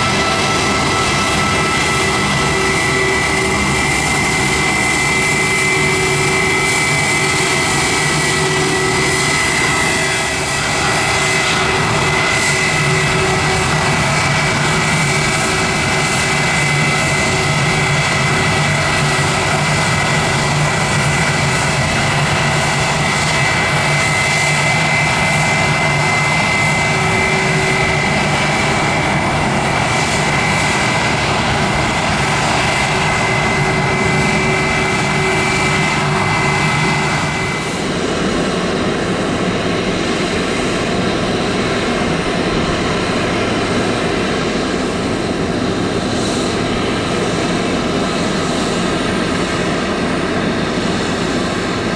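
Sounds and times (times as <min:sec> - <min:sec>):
airliner engines running: 0:00.0 - 0:51.9.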